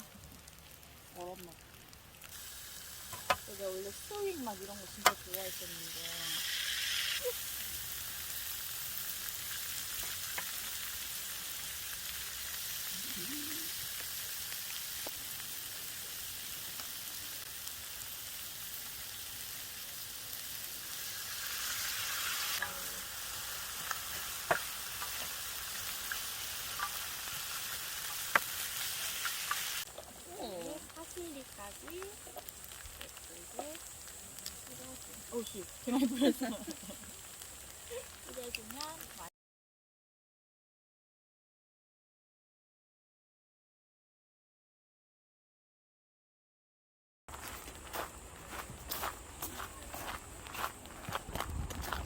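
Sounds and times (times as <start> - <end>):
food sizzling in a frying pan: 0.0 - 39.3.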